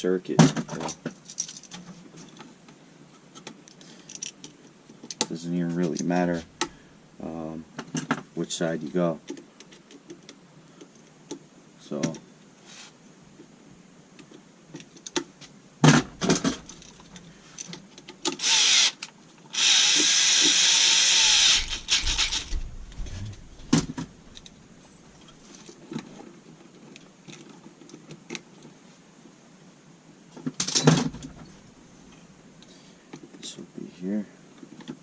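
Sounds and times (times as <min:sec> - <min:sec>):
steady hissing: 0:16.6 - 0:26.2
short noisy rasp: 0:19.6 - 0:23.4
tools clicking and knocking: 0:21.3 - 0:24.6.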